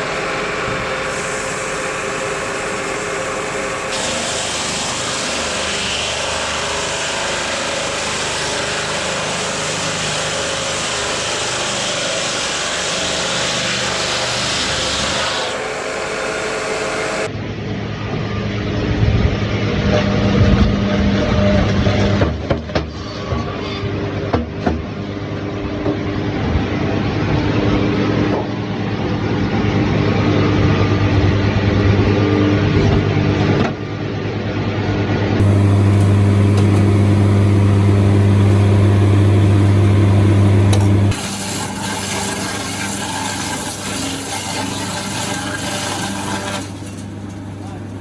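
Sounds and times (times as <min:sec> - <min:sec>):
sawmill machinery humming: 0:00.0 - 0:17.3, 0:35.4 - 0:48.0.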